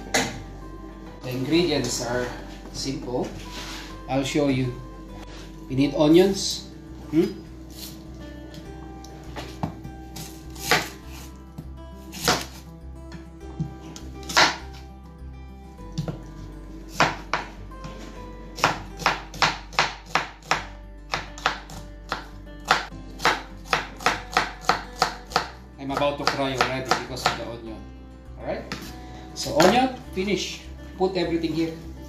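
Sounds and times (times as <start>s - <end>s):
background music: 0.0s - 32.0s
knife chopping onions: 10.2s - 11.3s, 12.1s - 12.6s, 14.2s - 14.6s, 16.9s - 17.5s, 18.6s - 27.4s.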